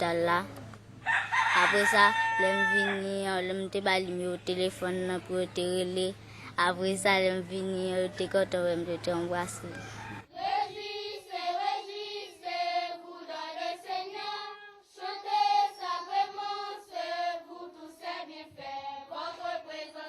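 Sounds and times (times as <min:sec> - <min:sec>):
children singing: 0:10.2 - 0:20.0.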